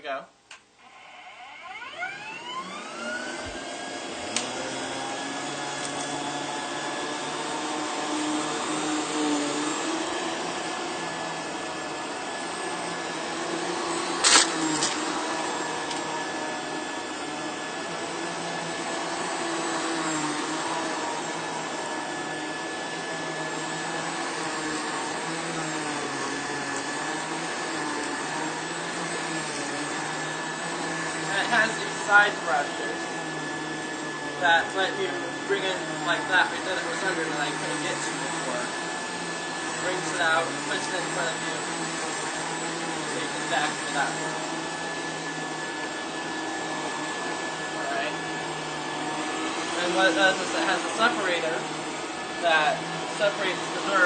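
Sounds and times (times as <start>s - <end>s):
vacuum cleaner running: 0.8s - 54.0s.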